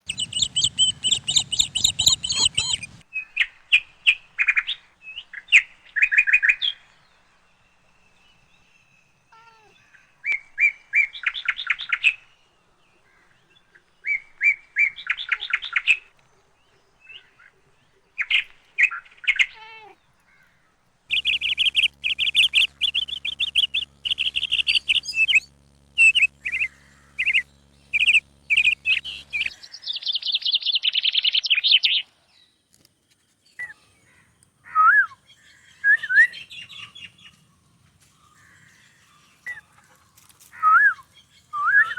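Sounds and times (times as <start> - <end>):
faint low hum: 0.0 - 3.0, 19.6 - 41.9
small birds chirping: 0.0 - 3.4, 4.6 - 12.3, 12.9 - 41.9.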